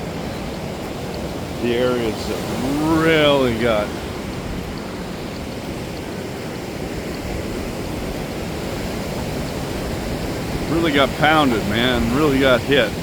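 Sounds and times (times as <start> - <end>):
ocean surf rushing: 0.0 - 13.0
wind: 0.0 - 13.0.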